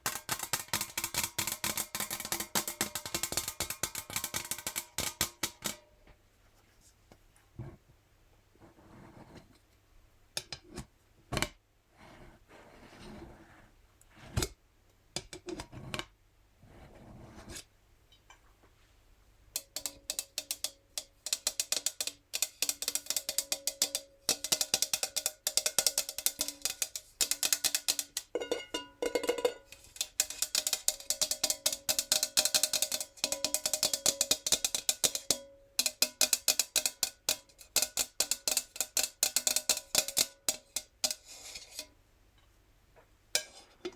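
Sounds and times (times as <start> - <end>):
fingernails tapping on metal jar: 0.0 - 5.8, 19.6 - 41.9.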